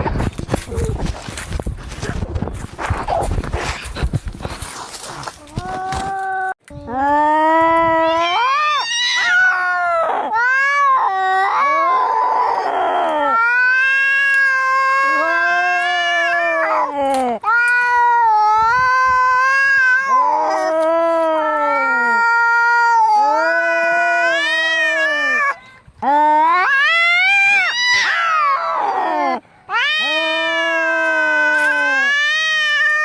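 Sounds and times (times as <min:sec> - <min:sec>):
cats yowling: 0:07.9 - 0:33.0.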